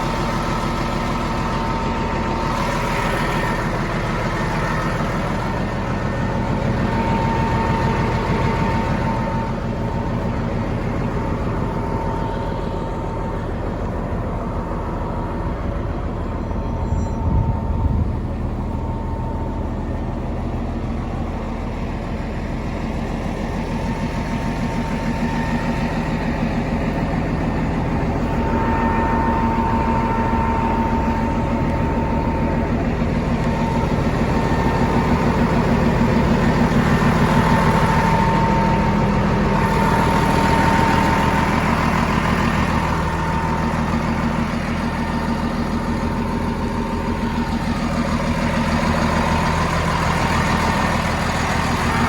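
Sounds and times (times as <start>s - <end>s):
bulldozer diesel engine running: 0.0s - 52.0s
thin whine: 0.0s - 52.0s.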